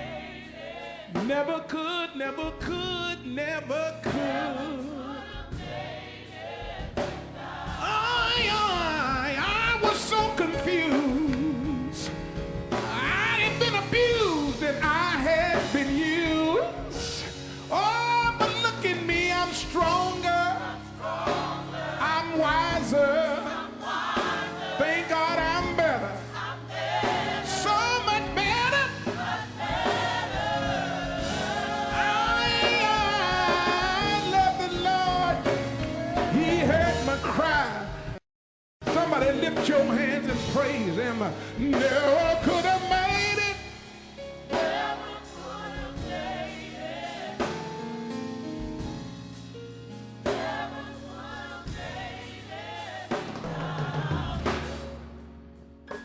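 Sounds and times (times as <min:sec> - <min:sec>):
gospel choir singing: 0:00.0 - 0:38.2, 0:38.8 - 0:56.0.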